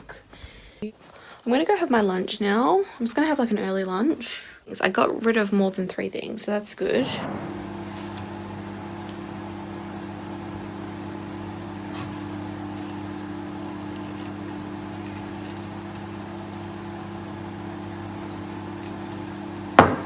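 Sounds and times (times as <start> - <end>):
kitchen appliance humming: 6.8 - 20.0.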